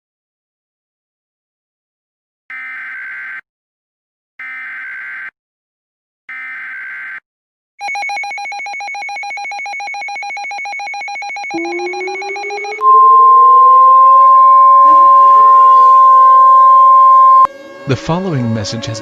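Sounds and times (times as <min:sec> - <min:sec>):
fast-pulsing electronic alarm tone: 0:07.8 - 0:17.7
air-raid siren winding up: 0:11.2 - 0:19.0
loud steady high tone: 0:11.3 - 0:19.0.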